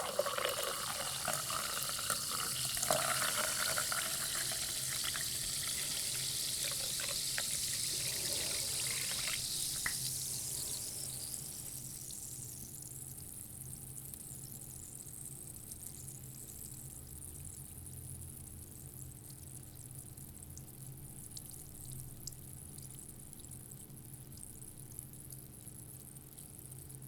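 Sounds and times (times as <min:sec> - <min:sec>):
sparkling water fizzing: 0:00.0 - 0:12.7.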